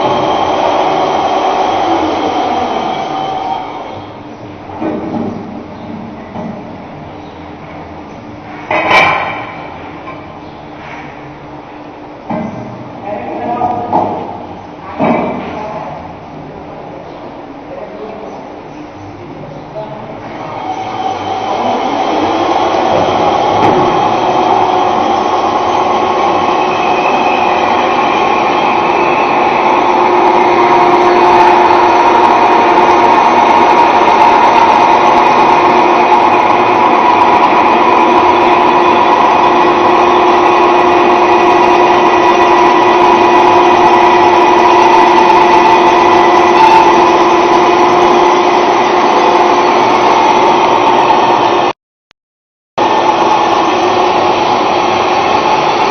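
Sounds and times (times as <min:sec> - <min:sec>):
drilling machine whine: 0:00.0 - 0:04.8, 0:20.2 - 0:51.8, 0:52.8 - 0:55.9.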